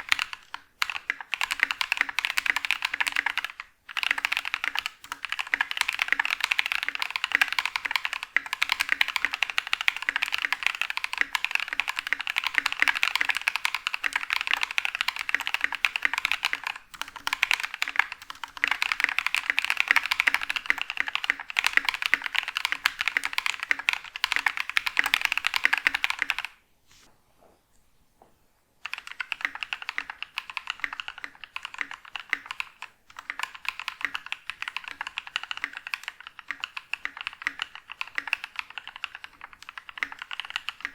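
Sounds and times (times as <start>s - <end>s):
fast mechanical keyboard typing: 0.0s - 26.6s, 28.8s - 40.9s.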